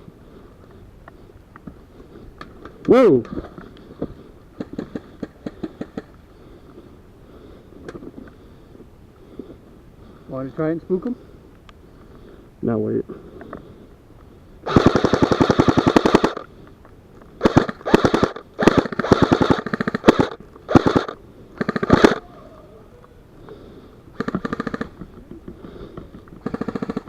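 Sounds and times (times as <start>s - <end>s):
airsoft rifle bursts: 14.6s - 16.5s, 17.4s - 22.2s, 24.2s - 25.0s, 26.4s - 27.0s.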